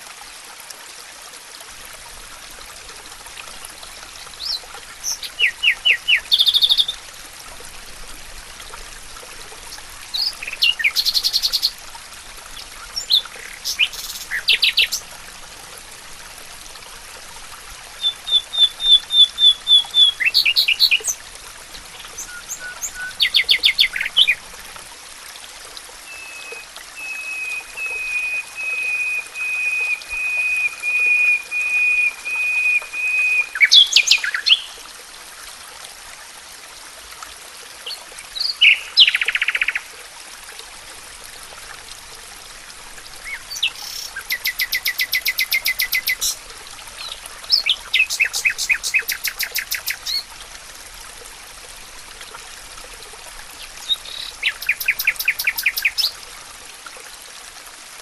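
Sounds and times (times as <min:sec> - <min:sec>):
songbirds singing: 0:04.2 - 0:07.0, 0:09.7 - 0:11.8, 0:12.5 - 0:15.1, 0:18.0 - 0:24.4, 0:26.0 - 0:34.8, 0:37.8 - 0:39.8, 0:43.2 - 0:46.4, 0:47.0 - 0:50.3, 0:53.6 - 0:56.2.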